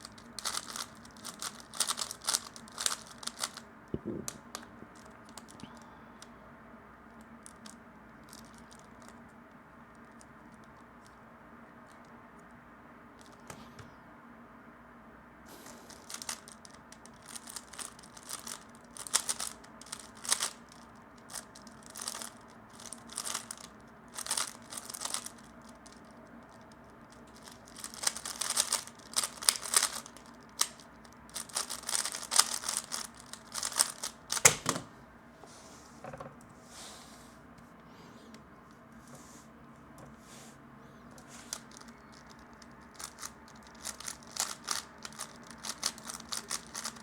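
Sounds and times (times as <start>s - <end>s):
puzzle cube clacking: 0.4s - 5.8s, 17.3s - 20.6s, 27.4s - 34.9s, 41.1s - 47.0s.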